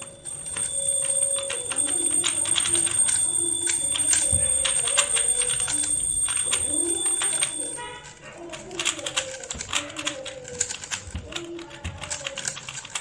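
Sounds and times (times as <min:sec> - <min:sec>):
plastic cube clicking: 0:08.5 - 0:13.0.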